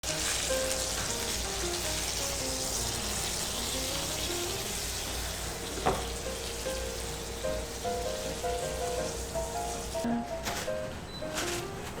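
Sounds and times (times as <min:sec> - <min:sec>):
food sizzling in a pan: 0:00.0 - 0:10.1
background music melody: 0:06.2 - 0:12.0.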